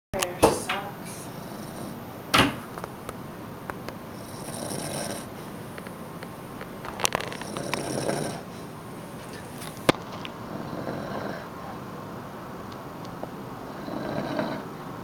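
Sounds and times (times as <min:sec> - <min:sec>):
man snoring: 0:04.2 - 0:05.4, 0:07.3 - 0:08.7, 0:10.5 - 0:11.6, 0:13.7 - 0:14.7.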